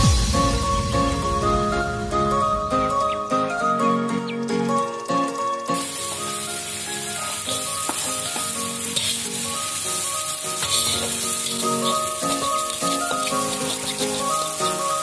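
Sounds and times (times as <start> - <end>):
background music: 0.0 - 15.0
food sizzling in a pan: 5.7 - 15.0.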